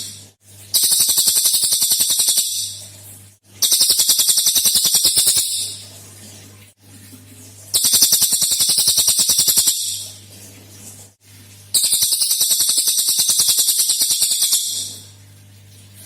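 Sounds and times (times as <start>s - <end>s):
songbird fast high trills: 0.8s - 2.8s, 3.6s - 5.8s, 7.8s - 10.1s, 11.8s - 15.1s.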